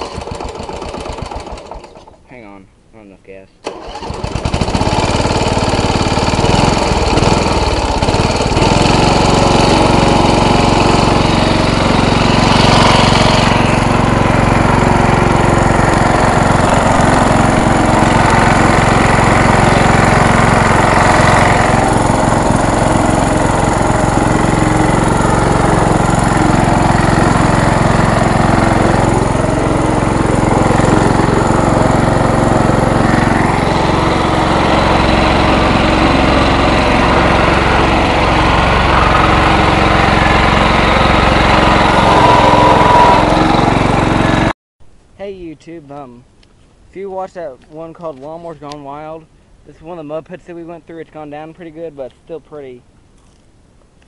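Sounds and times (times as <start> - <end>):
riding lawn mower engine: 0.0 - 2.3, 3.6 - 44.6.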